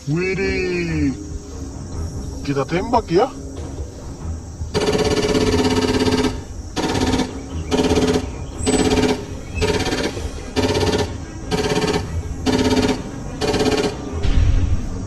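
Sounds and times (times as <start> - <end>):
toy gun rapid-fire gunshot effects: 4.8 - 14.0.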